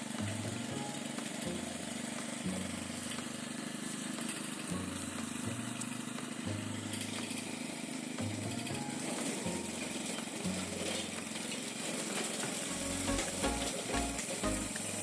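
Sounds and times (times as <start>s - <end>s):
grass crusher motor humming: 0.0s - 15.0s.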